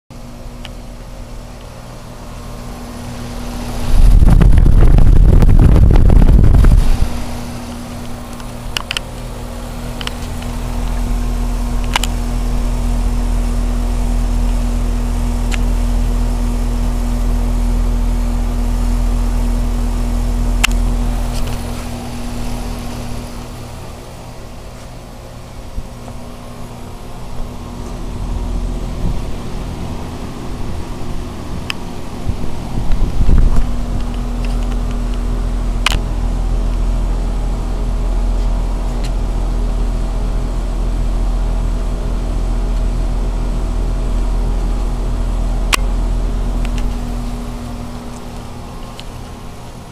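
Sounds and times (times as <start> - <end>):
air conditioner hum and fan: 0.1 - 49.9
loud rushing noise: 2.0 - 16.7.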